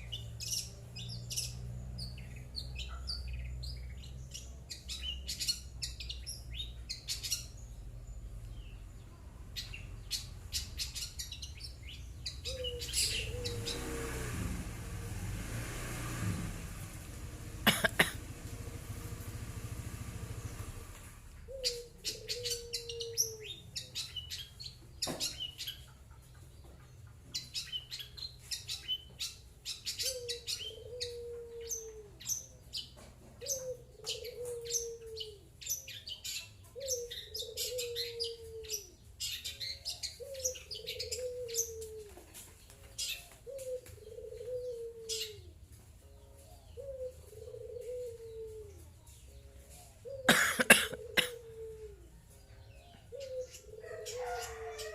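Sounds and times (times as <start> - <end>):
bird chirping and chattering: 9.6 - 13.8
falling coo-like bird call: 9.6 - 18.1, 19.0 - 25.9, 27.4 - 45.6, 46.4 - 54.9.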